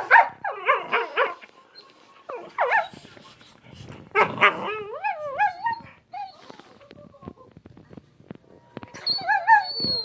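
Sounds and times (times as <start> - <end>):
dog whining and grumbling: 4.1 - 7.5, 8.8 - 10.0.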